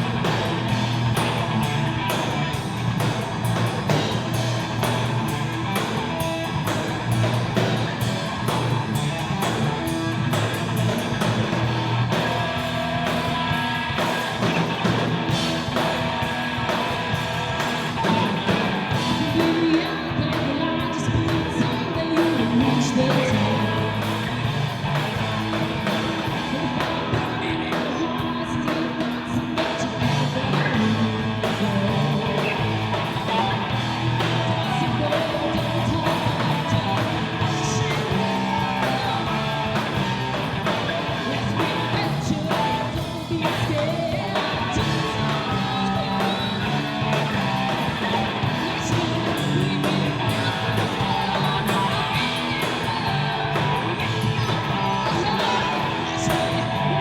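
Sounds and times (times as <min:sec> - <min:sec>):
electric guitar: 0:00.0 - 0:57.0
live rock band playing: 0:00.0 - 0:57.0
person singing: 0:17.8 - 0:57.0.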